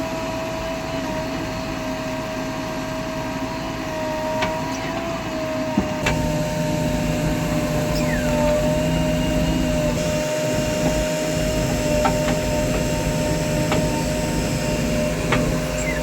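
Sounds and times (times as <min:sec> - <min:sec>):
constant whine: 0:02.8 - 0:16.0
diesel engine running: 0:04.6 - 0:16.0.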